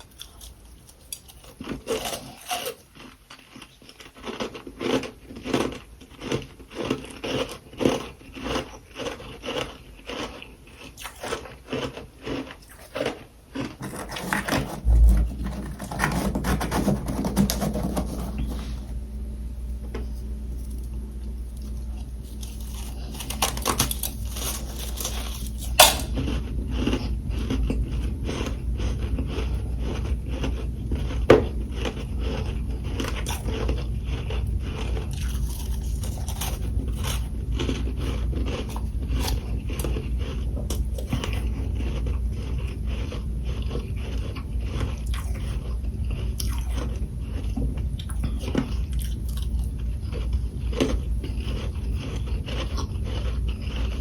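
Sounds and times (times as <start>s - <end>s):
frost being chewed: 0.0s - 54.0s
low hum: 14.0s - 54.0s.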